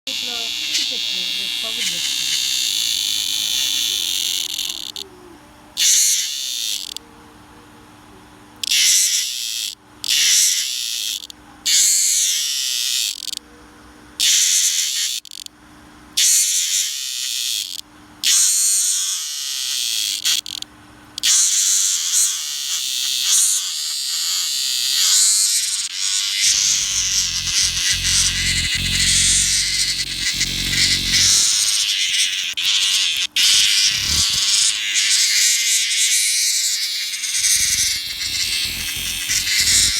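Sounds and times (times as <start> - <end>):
small animal shrill buzzing trill: 0.0 - 5.0, 5.8 - 7.0, 21.2 - 39.9.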